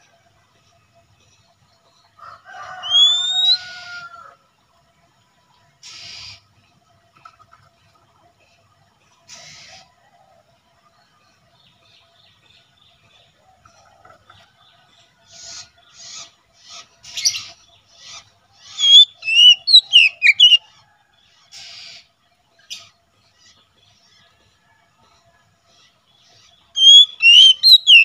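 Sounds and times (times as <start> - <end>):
bird whistled notes: 2.8 - 3.8, 18.7 - 20.6, 26.8 - 28.0
bird scratchy notes: 26.8 - 28.0.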